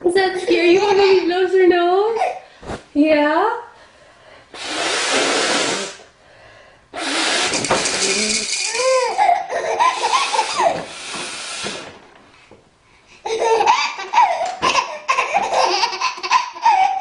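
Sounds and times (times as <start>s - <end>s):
baby laughing: 0.3s - 1.5s, 8.0s - 10.9s, 13.2s - 17.0s
woman blowing her nose: 4.5s - 6.1s, 6.9s - 9.2s, 9.8s - 12.0s.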